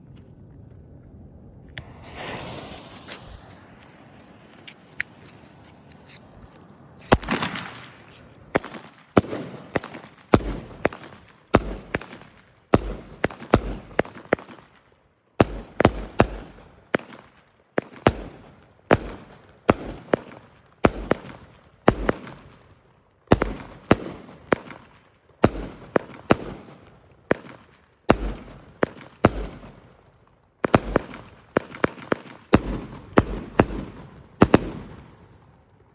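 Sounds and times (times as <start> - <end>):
firework fuse hissing: 1.6 - 8.6
firework shots banging: 1.6 - 14.5, 17.9 - 22.6, 30.6 - 34.8.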